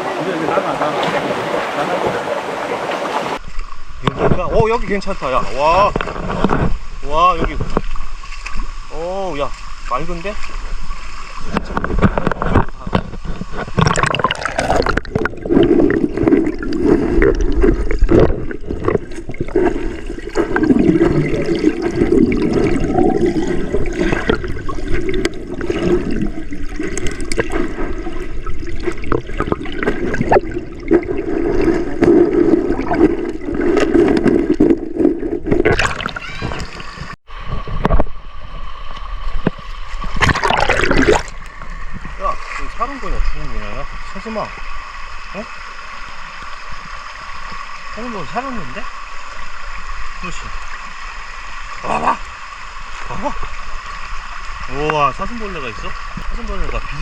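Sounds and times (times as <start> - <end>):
stream water gurgling: 0.0 - 57.0
small water splashes: 7.4 - 37.2, 39.4 - 44.4.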